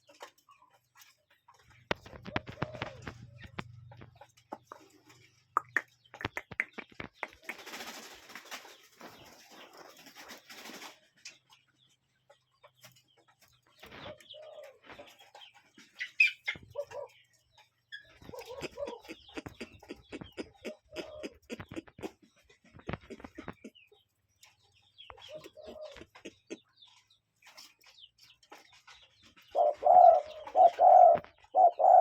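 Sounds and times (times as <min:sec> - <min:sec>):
birds calling low notes: 0:01.5 - 0:10.9, 0:12.8 - 0:32.0.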